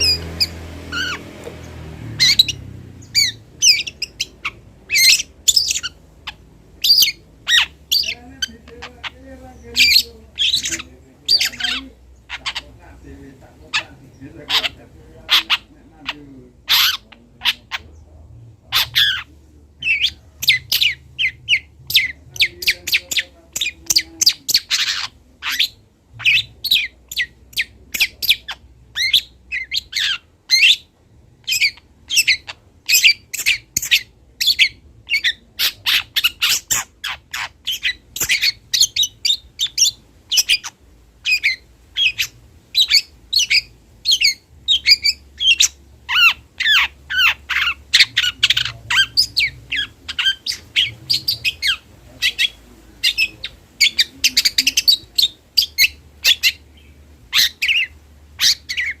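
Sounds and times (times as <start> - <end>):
shrike chirping and squawking: 0.0 - 59.0.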